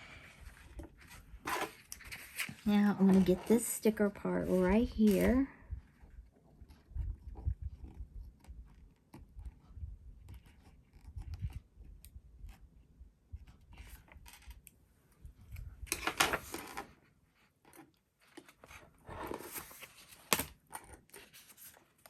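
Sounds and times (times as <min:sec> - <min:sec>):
paper rustling: 0:00.4 - 0:05.4, 0:18.2 - 0:22.0.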